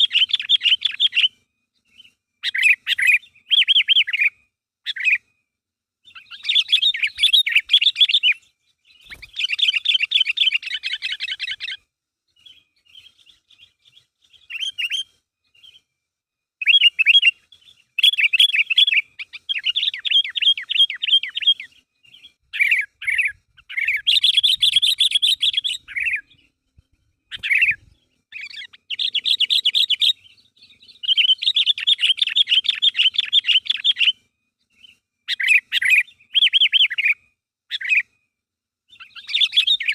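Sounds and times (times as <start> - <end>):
bulbul chattering: 6.1 - 11.8, 22.6 - 26.4, 27.3 - 34.1.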